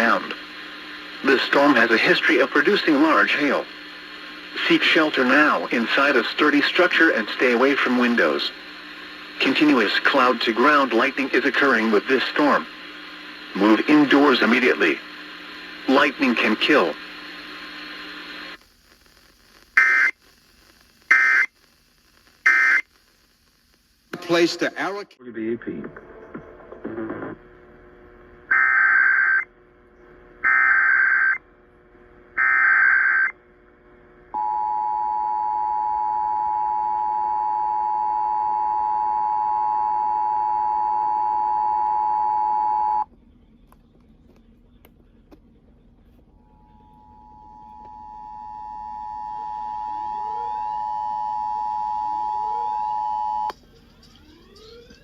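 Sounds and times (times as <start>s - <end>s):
digital header data buzz: 0.0s - 18.1s, 19.8s - 20.2s, 21.1s - 21.5s, 22.4s - 22.9s, 30.4s - 31.4s, 32.4s - 33.4s.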